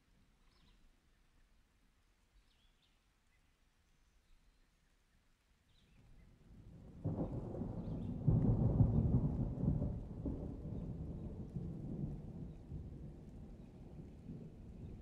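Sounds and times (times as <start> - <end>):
thunder rumbling: 6.7 - 15.0.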